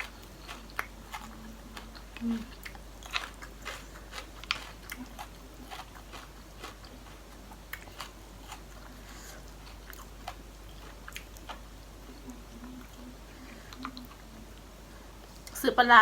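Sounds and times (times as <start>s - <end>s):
food crunches: 0.0s - 8.9s
chewing and biting food: 0.0s - 13.1s
faint low hum: 0.0s - 16.0s.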